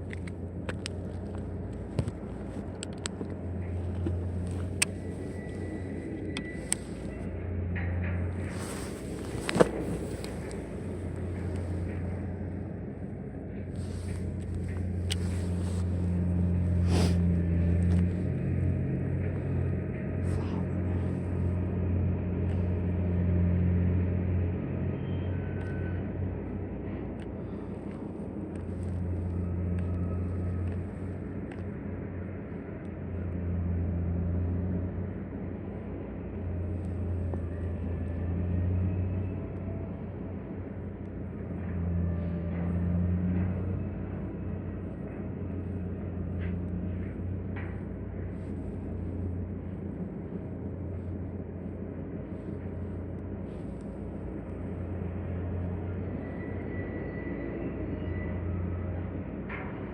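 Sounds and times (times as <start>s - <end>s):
low engine-like hum: 0.0s - 59.9s.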